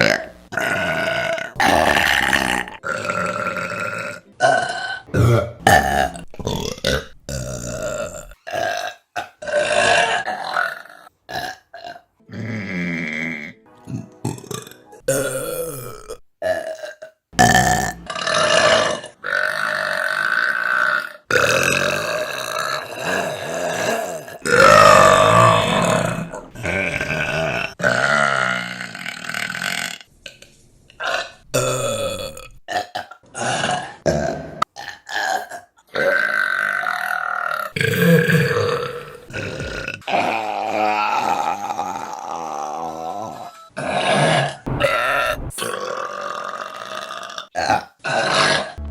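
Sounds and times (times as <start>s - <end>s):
woman burping: 0.0s - 19.1s.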